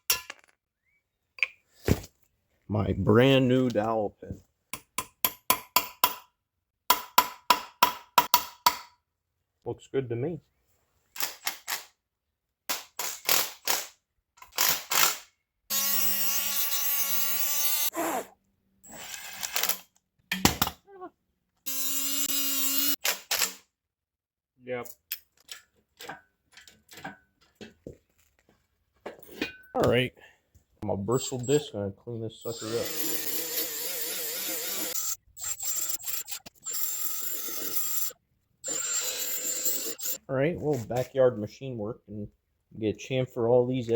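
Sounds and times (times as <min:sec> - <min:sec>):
power tool whining: 0:32.5 - 0:40.2.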